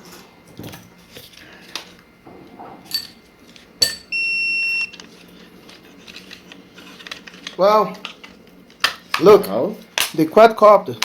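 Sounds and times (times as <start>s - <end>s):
long high electronic beep: 4.1s - 4.9s.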